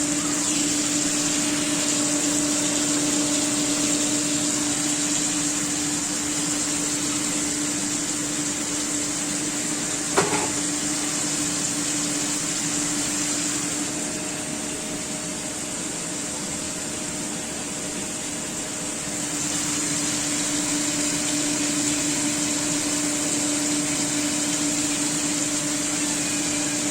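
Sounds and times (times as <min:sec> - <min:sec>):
hiss: 0:00.0 - 0:26.9
steady machine hum: 0:00.0 - 0:26.9.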